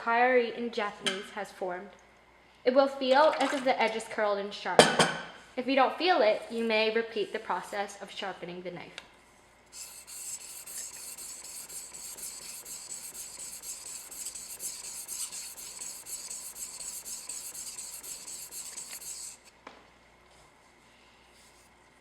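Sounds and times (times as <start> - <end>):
knife scraping on whetstone: 9.8 - 19.5.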